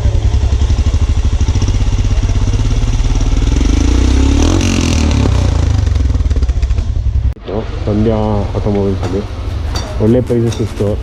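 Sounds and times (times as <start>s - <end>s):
motorcycle engine idling and revving: 0.0s - 11.0s.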